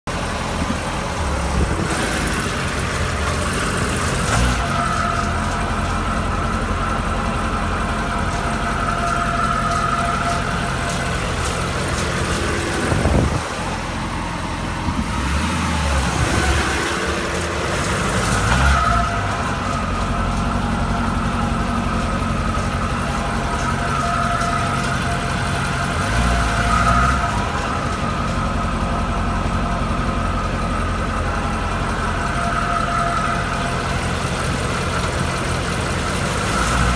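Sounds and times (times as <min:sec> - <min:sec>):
car engine running: 0:00.0 - 0:36.9
engine ticking: 0:00.0 - 0:36.9.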